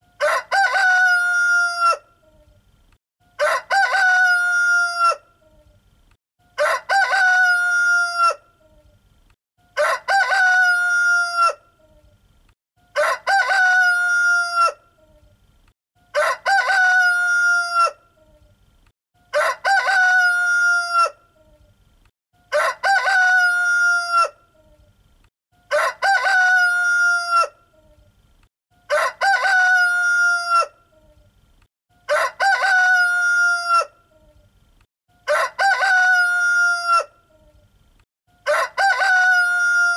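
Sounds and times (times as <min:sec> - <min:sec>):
rooster crowing: 0:00.2 - 0:02.1, 0:03.3 - 0:05.3, 0:06.6 - 0:08.4, 0:09.7 - 0:11.6, 0:12.9 - 0:14.8, 0:16.1 - 0:18.0, 0:19.3 - 0:21.2, 0:22.4 - 0:24.4, 0:25.6 - 0:27.6, 0:28.8 - 0:30.8, 0:32.0 - 0:34.0, 0:35.2 - 0:37.2, 0:38.4 - 0:39.9.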